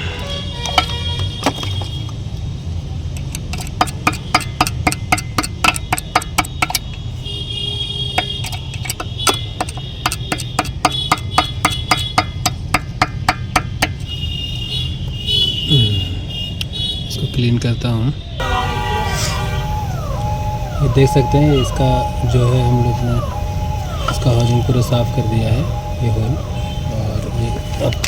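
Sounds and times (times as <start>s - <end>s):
tool tapping on metal valve: 3.4s - 6.9s, 8.2s - 14.0s
steady low hum: 18.4s - 28.0s.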